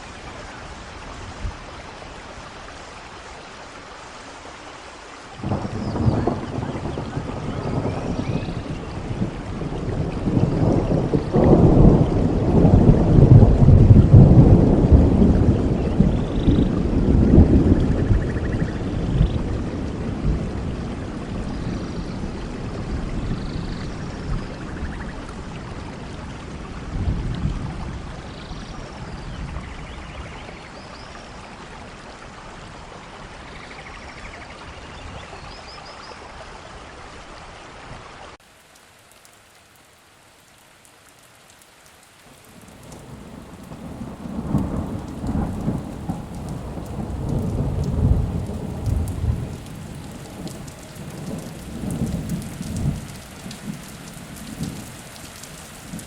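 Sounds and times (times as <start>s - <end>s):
steady rain: 0.0s - 56.0s
thunder rumbling: 5.4s - 30.7s, 42.4s - 56.0s.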